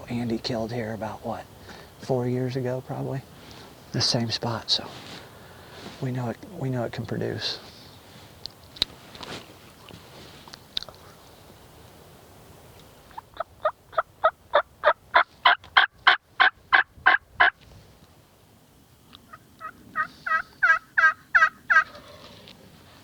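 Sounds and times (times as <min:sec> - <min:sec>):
hen turkey yelps: 0:19.3 - 0:22.4.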